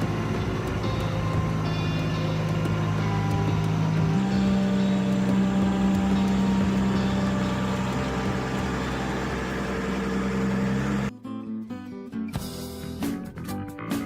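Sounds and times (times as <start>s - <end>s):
vehicle engine running: 0.0s - 11.1s.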